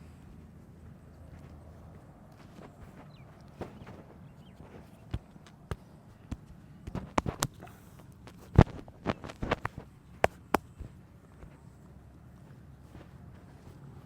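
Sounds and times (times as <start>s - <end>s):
hands slapping on body: 5.1s - 7.8s, 8.6s - 11.0s.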